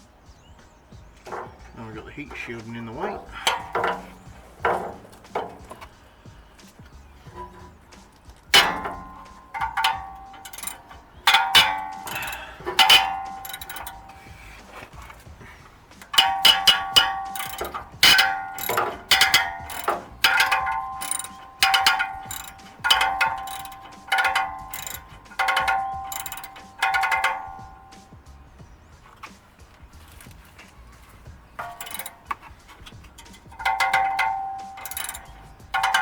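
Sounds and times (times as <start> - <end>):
metallic ring from exhaust: 1.1 - 29.3, 29.9 - 36.0
socket ratchet clicking: 6.6 - 28.2, 30.0 - 36.0.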